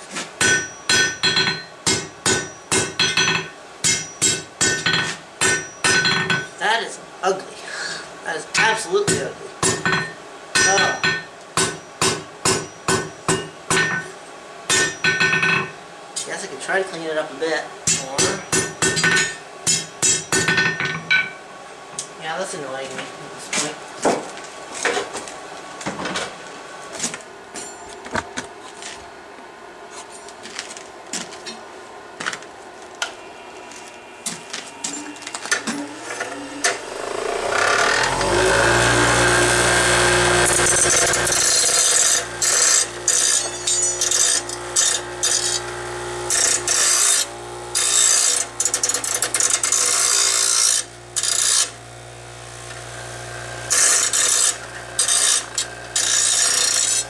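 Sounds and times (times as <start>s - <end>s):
electric power tool running: 33.3s - 57.0s.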